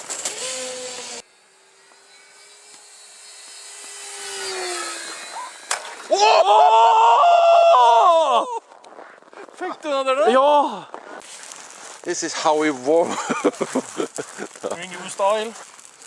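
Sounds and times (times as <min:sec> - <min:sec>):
electric model plane motor whining: 0:00.1 - 0:06.1
person yelling: 0:06.1 - 0:08.6.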